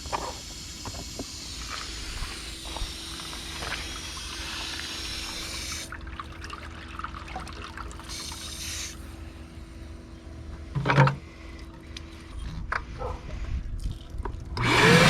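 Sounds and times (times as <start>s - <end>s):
pressure washer spraying water: 0.0s - 5.9s, 8.0s - 9.0s
water splashing and dripping: 2.6s - 8.6s.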